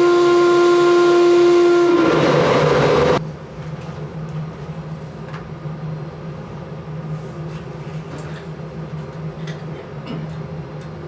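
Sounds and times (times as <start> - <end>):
low machinery hum: 0.0 - 11.0.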